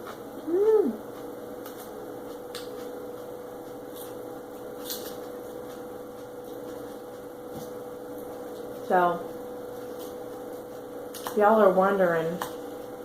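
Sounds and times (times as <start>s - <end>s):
steady electrical hum: 0.0s - 13.0s
person humming: 0.4s - 1.1s.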